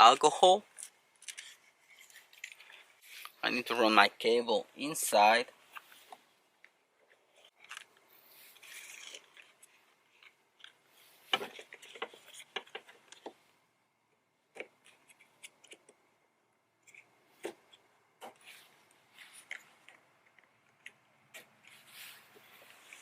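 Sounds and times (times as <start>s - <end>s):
soft rustle: 0.7s - 3.5s, 5.6s - 13.3s, 16.9s - 20.5s, 21.3s - 23.0s.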